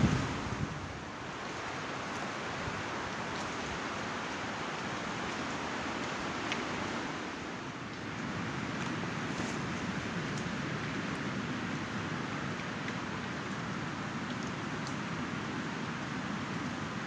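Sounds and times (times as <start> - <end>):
strong wind blowing: 0.0 - 3.2.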